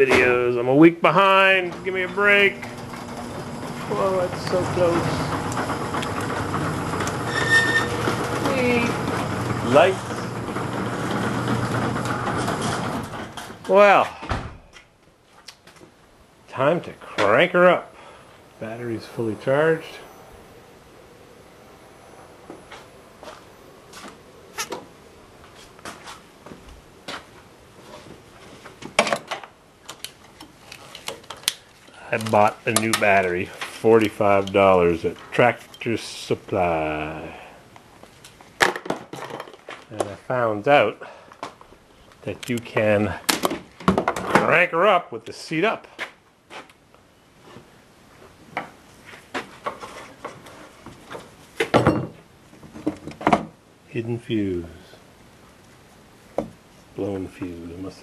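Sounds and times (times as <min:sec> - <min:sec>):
clicks and knocks of handling: 0:28.8 - 0:35.8.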